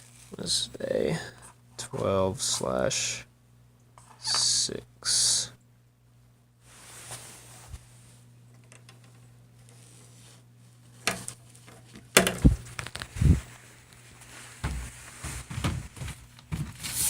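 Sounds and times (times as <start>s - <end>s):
cardboard filter rustling: 0.0s - 0.6s, 12.4s - 17.0s
steady low hum: 0.0s - 17.0s.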